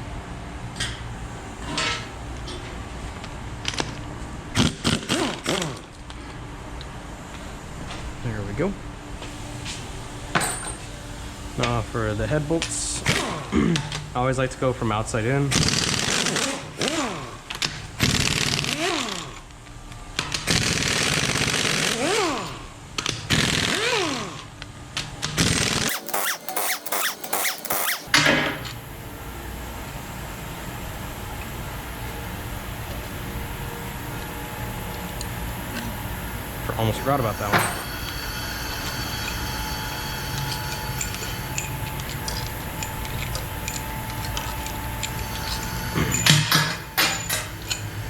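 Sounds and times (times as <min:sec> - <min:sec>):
impact wrench hammering: 0:25.4 - 0:28.6
tool motor whine: 0:25.4 - 0:28.7, 0:36.7 - 0:48.0
metal clanks: 0:46.0 - 0:48.0.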